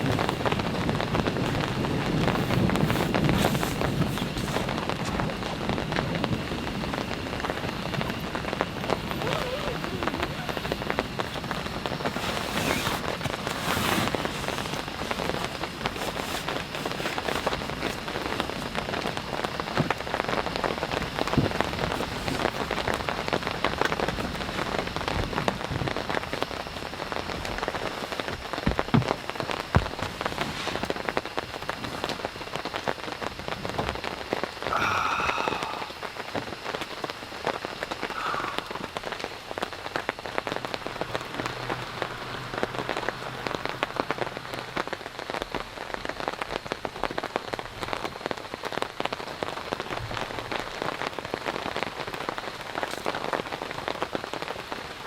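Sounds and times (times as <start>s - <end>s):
heavy rain falling: 0.0s - 55.0s.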